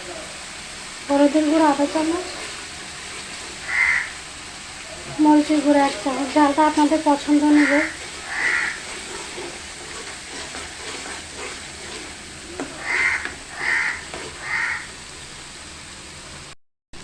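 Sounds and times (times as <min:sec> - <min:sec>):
spice paste sizzling in oil: 0:00.0 - 0:17.0
crow cawing: 0:03.6 - 0:04.2, 0:07.4 - 0:08.9, 0:12.8 - 0:14.9.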